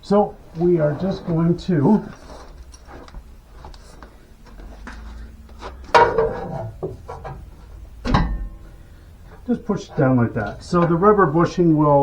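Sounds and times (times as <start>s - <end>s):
loud metal clunk: 4.6s - 11.3s
metal parts knocking and rubbing: 5.0s - 11.1s.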